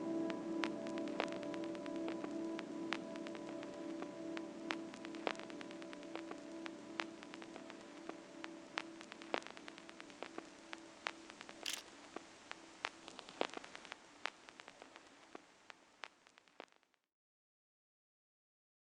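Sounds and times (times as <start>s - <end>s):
crackles and pops: 4.7s - 17.1s.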